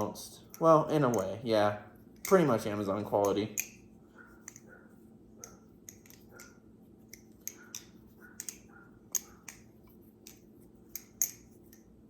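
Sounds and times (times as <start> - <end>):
butterfly knife clicks and clacks: 2.2 - 2.6, 5.4 - 11.9.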